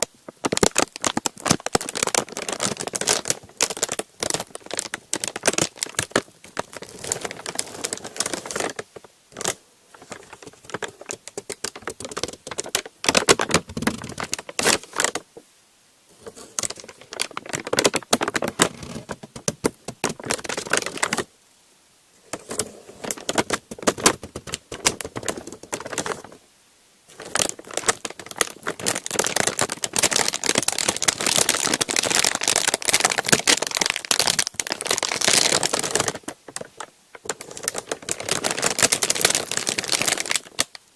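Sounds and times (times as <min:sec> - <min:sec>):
rapid crinkling: 0:00.0 - 0:15.4, 0:16.1 - 0:21.3, 0:22.2 - 0:26.4, 0:27.1 - 0:40.9.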